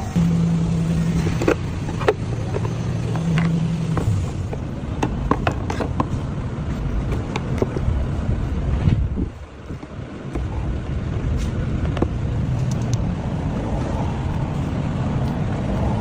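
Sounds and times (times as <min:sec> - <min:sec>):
car engine rumbling: 0:00.0 - 0:16.0
sharp clicks and taps: 0:11.9 - 0:13.0.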